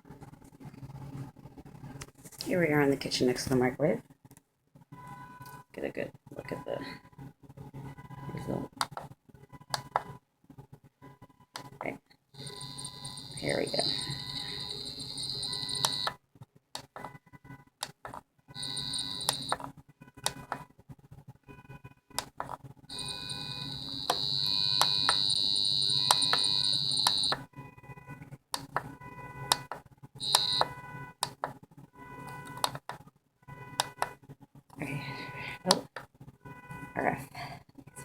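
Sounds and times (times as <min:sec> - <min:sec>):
high electronic beeping tone: 0:12.4 - 0:16.2, 0:18.5 - 0:19.6, 0:22.9 - 0:28.0, 0:28.6 - 0:30.9.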